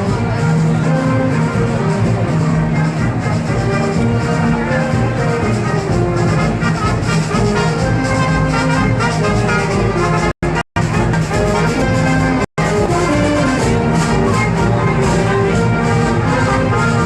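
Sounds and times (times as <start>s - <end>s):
brass band playing: 0.0s - 17.0s.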